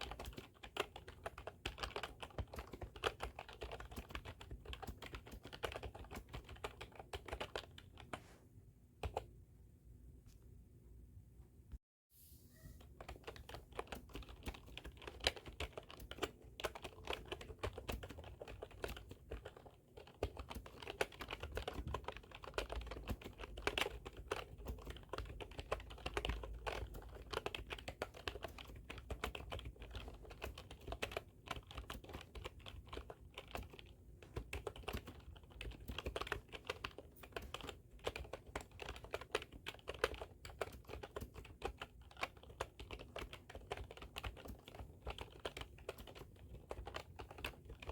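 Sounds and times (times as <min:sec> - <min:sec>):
typing on a computer keyboard: 0:00.0 - 0:08.2, 0:09.0 - 0:09.3, 0:13.0 - 0:47.9.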